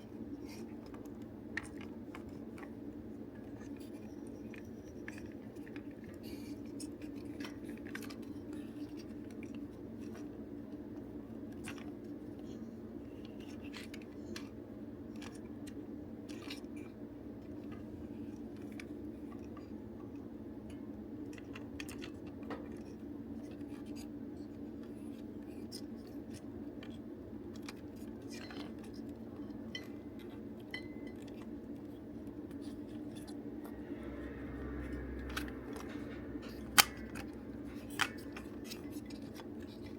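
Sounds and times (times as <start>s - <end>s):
steady low hum: 0.0s - 39.9s
plastic toy parts clicking: 36.5s - 39.9s.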